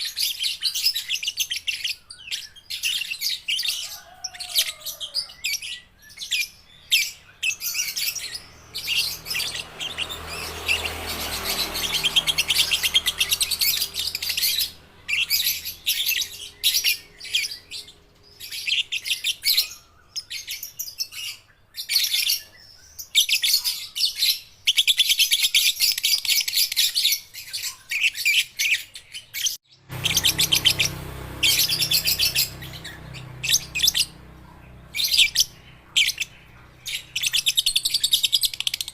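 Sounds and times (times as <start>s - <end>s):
lovebirds chattering trills: 29.9s - 38.9s.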